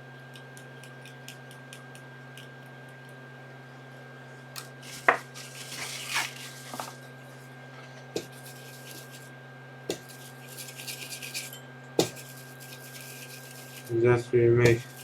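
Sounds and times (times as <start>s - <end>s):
steady electrical hum: 0.0s - 15.0s
scraping or rubbing: 4.8s - 7.4s, 8.2s - 9.3s, 9.9s - 14.0s, 14.8s - 15.0s.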